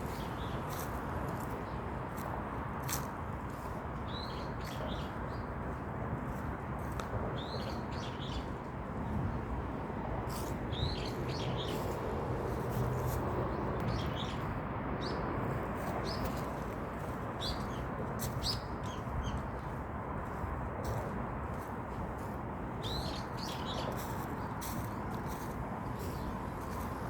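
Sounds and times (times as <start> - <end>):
small birds chirping: 17.4 - 19.8, 22.8 - 27.0.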